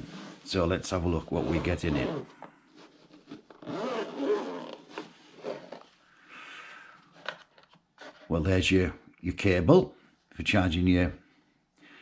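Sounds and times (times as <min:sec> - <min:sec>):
zipper being pulled open: 0:01.2 - 0:02.4, 0:03.2 - 0:05.9
case being handled: 0:07.2 - 0:08.2.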